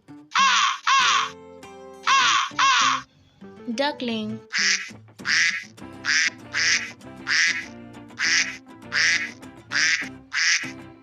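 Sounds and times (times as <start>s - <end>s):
background music: 0.0s - 11.0s
duckling quacking: 0.3s - 1.3s, 2.0s - 3.1s, 4.5s - 10.8s.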